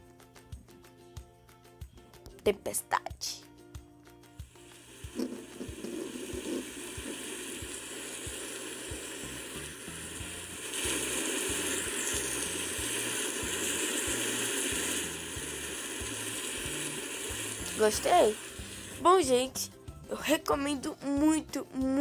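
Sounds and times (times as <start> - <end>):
heavy rain hiss: 4.6 - 19.5.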